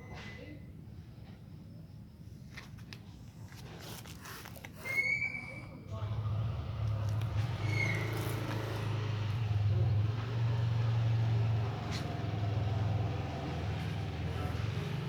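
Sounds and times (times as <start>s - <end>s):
brief high squeak: 4.8s - 5.8s, 7.6s - 8.5s
engine rumbling: 5.9s - 15.0s.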